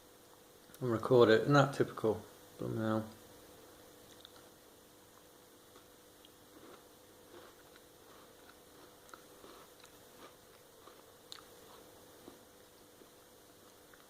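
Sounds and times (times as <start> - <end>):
thin steady hum: 0.0 - 14.0
biscuit being chewed: 4.0 - 14.0.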